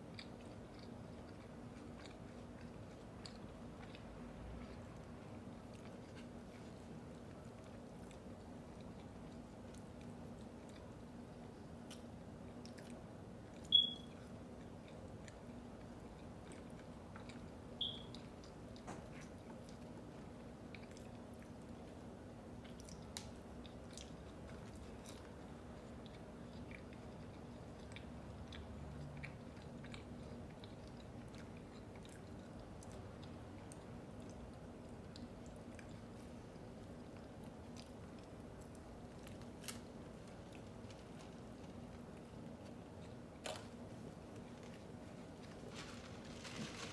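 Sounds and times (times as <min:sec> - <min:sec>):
chewing food: 0:00.0 - 0:46.9
faint steady hum: 0:00.0 - 0:46.9
short high chirps: 0:13.7 - 0:14.1, 0:17.8 - 0:18.1.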